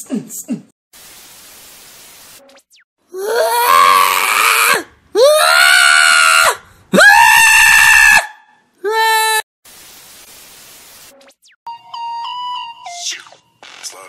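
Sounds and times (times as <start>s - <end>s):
person screaming: 3.1s - 9.4s.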